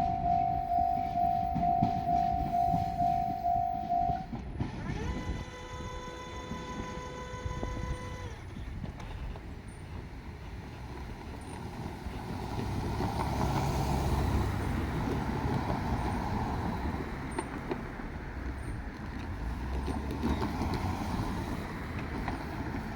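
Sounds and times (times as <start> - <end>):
train horn: 0.0 - 8.6
diesel train rumbling: 0.0 - 22.9.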